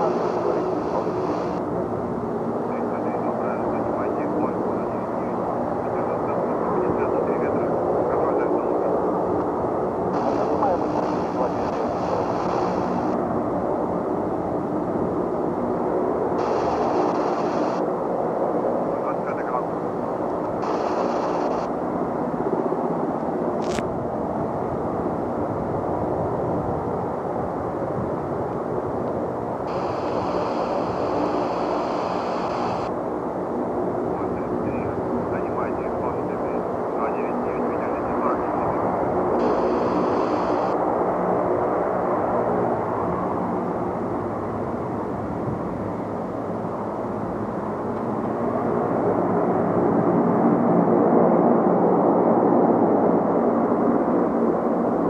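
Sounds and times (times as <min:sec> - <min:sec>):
faint high whine: 0:00.0 - 0:01.7, 0:10.2 - 0:13.2, 0:16.4 - 0:17.9, 0:20.4 - 0:21.8, 0:29.6 - 0:32.9, 0:34.1 - 0:40.8
turboprop engines droning: 0:00.0 - 0:51.8.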